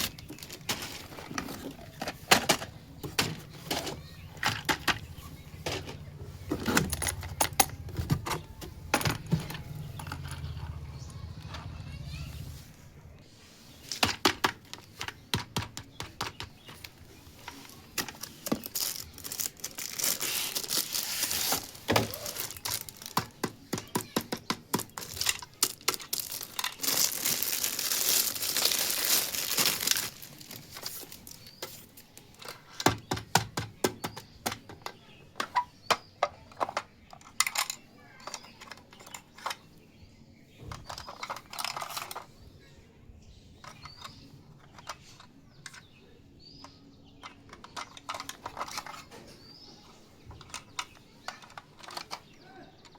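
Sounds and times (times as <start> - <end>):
plastic packaging crinkling: 0.0 - 2.0, 17.6 - 23.3, 24.8 - 31.5.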